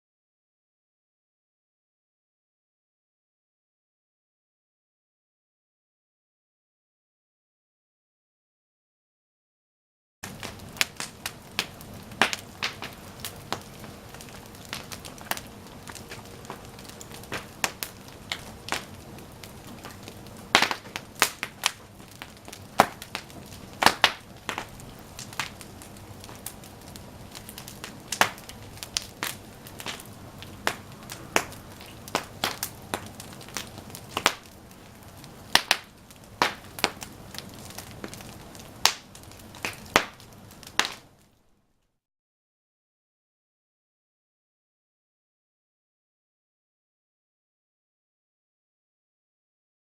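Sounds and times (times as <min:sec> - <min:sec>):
bonfire flames hissing: 0:10.2 - 0:41.4
fire crackling and popping: 0:10.2 - 0:41.5.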